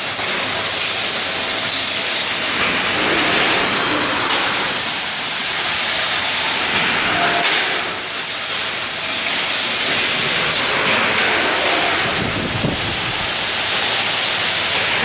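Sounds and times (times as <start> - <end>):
machine hissing: 11.4 - 15.0.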